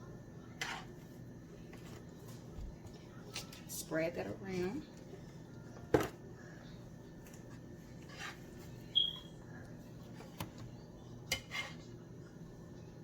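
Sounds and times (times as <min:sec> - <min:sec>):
utensil scraping in baking dish: 0:00.6 - 0:01.1, 0:07.9 - 0:08.9, 0:11.3 - 0:12.0.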